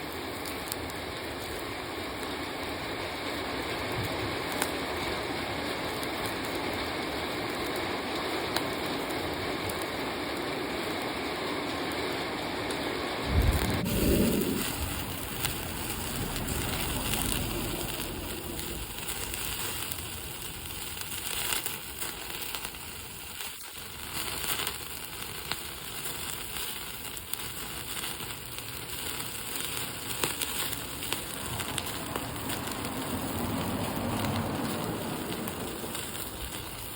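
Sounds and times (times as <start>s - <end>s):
cooking fire crackling: 0.0s - 36.9s
meat grilling: 0.0s - 36.9s
low rumble: 13.2s - 21.2s.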